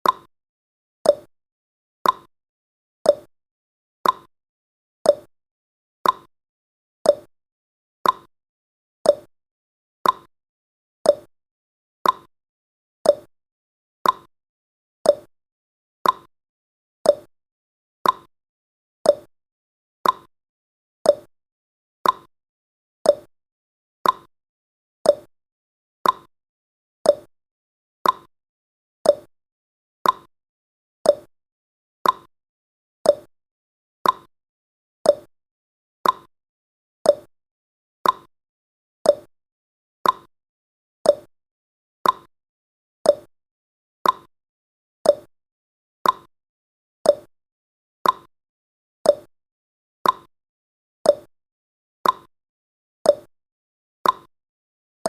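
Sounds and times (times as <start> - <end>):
timer ticking: 0.0 - 0.3, 1.1 - 1.3, 2.0 - 2.3, 3.1 - 3.3, 4.0 - 4.3, 5.1 - 5.3, 6.0 - 6.3, 7.1 - 7.3, 8.0 - 8.3, 9.1 - 9.3, 10.0 - 10.3, 11.1 - 11.3, 12.0 - 12.3, 13.1 - 13.3, 14.0 - 14.3, 15.1 - 15.3, 16.0 - 16.3, 17.1 - 17.3, 18.0 - 18.3, 19.1 - 19.3, 20.0 - 20.3, 21.1 - 21.3, 22.0 - 22.3, 23.1 - 23.3, 24.0 - 24.3, 25.1 - 25.3, 26.0 - 26.3, 27.1 - 27.3, 28.0 - 28.3, 29.0 - 29.3, 30.0 - 30.3, 31.0 - 31.3, 32.0 - 32.3, 33.1 - 33.3, 34.0 - 34.3, 35.1 - 35.3, 36.0 - 36.3, 37.1 - 37.3, 38.0 - 38.3, 39.1 - 39.3, 40.0 - 40.3, 41.1 - 41.3, 42.0 - 42.3, 43.1 - 43.3, 44.0 - 44.3, 45.1 - 45.3, 46.0 - 46.3, 47.1 - 47.3, 48.0 - 48.3, 49.1 - 49.3, 50.0 - 50.3, 51.1 - 51.3, 52.0 - 52.3, 53.1 - 53.3, 54.0 - 54.3.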